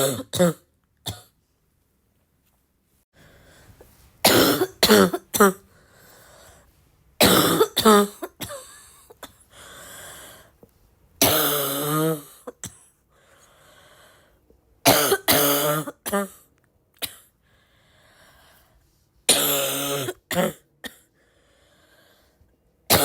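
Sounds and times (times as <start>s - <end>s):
person coughing: 0.0s - 1.4s, 4.2s - 5.7s, 7.2s - 9.5s, 11.2s - 13.0s, 14.9s - 17.3s, 19.3s - 21.1s
person breathing: 3.1s - 4.0s, 5.6s - 6.8s, 9.4s - 10.7s, 13.1s - 14.4s, 17.4s - 19.1s, 21.1s - 22.5s.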